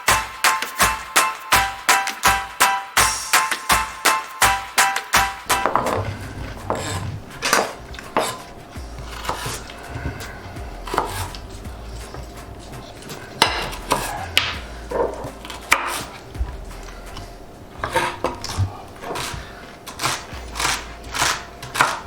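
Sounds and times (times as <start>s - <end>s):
knife chopping on cutting board: 0.0s - 11.4s, 17.8s - 22.0s.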